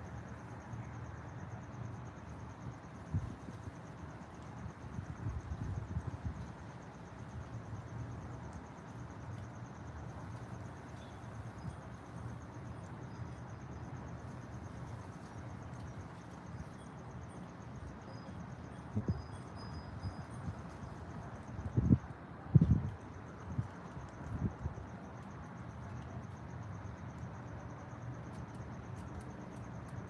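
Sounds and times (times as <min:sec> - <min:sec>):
pulsing high insect trill: 0:16.5 - 0:21.0.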